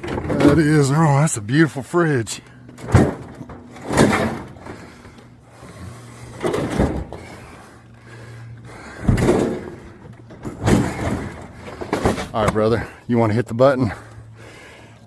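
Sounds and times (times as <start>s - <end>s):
plastic drawers clunking and sliding: 0.0s - 0.8s, 2.7s - 4.9s, 6.4s - 7.3s, 9.0s - 12.6s.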